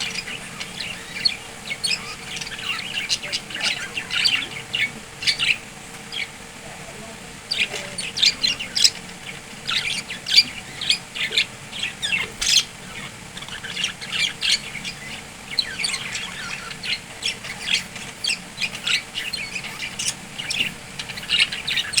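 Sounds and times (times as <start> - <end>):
budgerigars chattering and squawking: 0.0 - 22.0.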